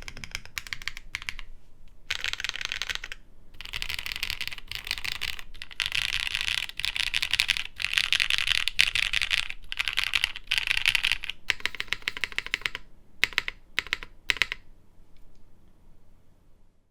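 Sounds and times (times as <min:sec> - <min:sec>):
fast typing key clicks: 0:02.1 - 0:14.6.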